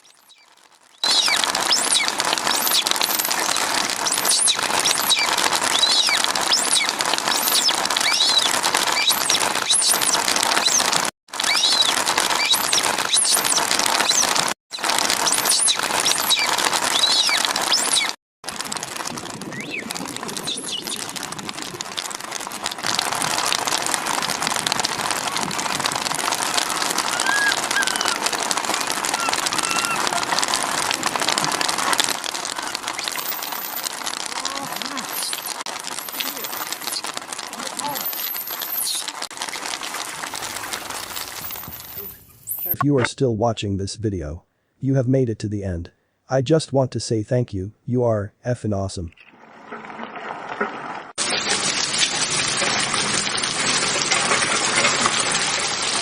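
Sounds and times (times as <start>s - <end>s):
heavy rain: 1.0s - 42.8s, 49.8s - 56.0s
short high-pitched calls: 27.1s - 28.3s, 29.0s - 30.2s.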